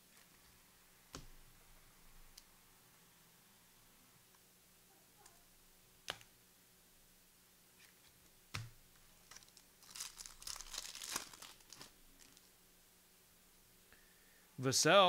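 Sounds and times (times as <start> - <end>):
wrapper tearing and crinkling: 9.2 - 12.5.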